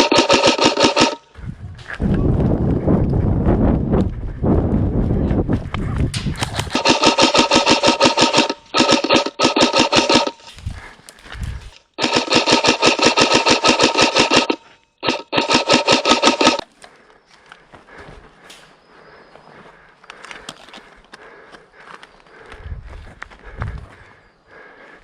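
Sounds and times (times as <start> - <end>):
airsoft gun firing bursts: 0.0 - 1.3, 6.4 - 10.5, 11.9 - 16.6.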